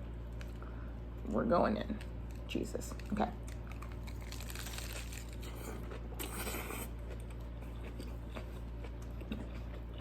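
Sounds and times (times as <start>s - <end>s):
steady low hum: 0.0s - 10.0s
crisp crunch of biting: 2.2s - 9.8s
chewing with mouth clicks: 2.3s - 10.0s.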